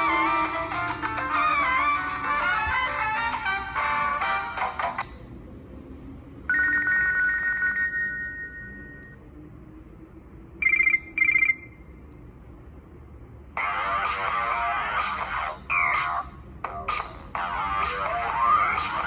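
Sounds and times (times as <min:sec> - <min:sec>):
two-note phone chime: 0:06.5 - 0:09.2.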